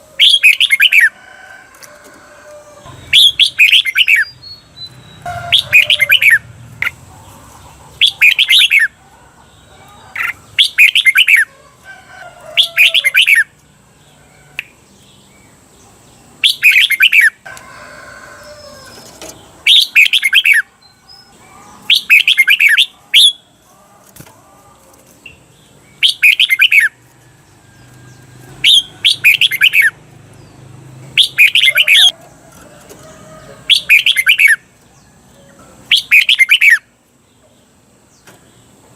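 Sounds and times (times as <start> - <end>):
bulbul singing warbled phrases: 0.0 - 1.2, 2.8 - 11.6, 12.5 - 14.8, 15.4 - 17.4, 18.9 - 24.2, 25.2 - 27.0, 28.1 - 32.2, 33.6 - 34.7, 35.9 - 36.9.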